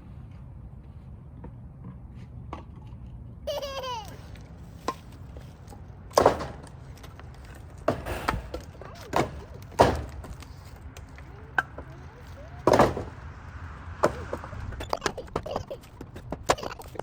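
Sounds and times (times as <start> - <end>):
logs knocking onto stacked wood: 6.1 - 10.6, 12.6 - 13.4, 14.0 - 14.4.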